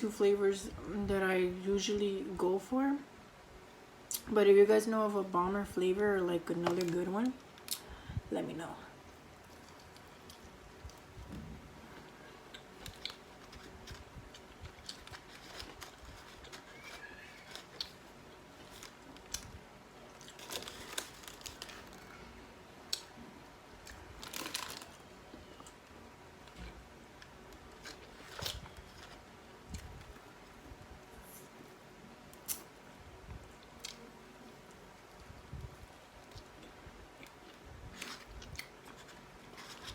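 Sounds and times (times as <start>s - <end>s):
crinkly packaging rustling: 9.4s - 22.2s, 23.8s - 25.8s, 26.5s - 30.4s, 37.4s - 39.9s.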